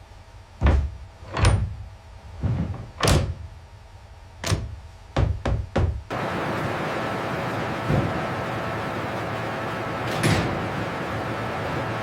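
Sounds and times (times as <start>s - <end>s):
heavy mechanical thuds: 0.6s - 3.6s, 4.4s - 6.2s, 7.8s - 8.4s.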